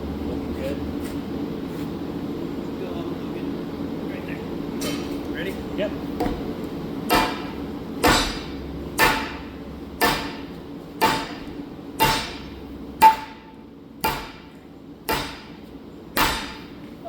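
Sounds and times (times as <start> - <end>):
hammer blows on metal: 7.1 - 15.6.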